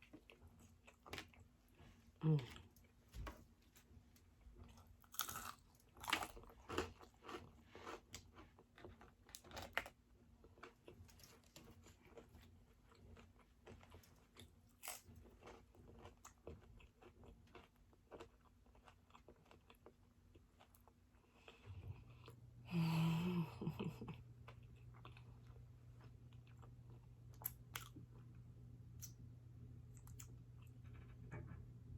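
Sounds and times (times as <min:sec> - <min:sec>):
person chewing crunchy food: 0:04.5 - 0:22.4, 0:24.1 - 0:28.4.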